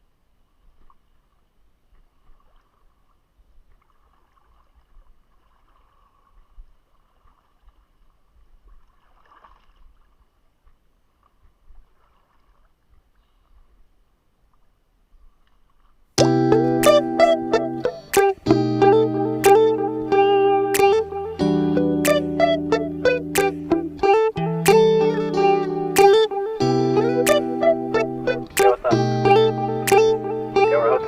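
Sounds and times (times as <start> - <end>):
faint water splashes: 0.2 - 16.2.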